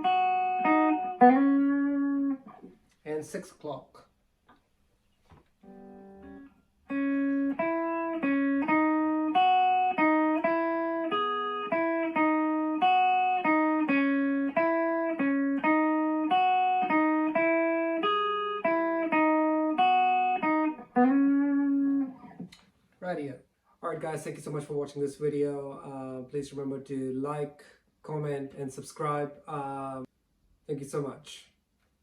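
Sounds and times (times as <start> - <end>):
clean electric guitar riff: 0.0 - 2.7, 5.6 - 22.6.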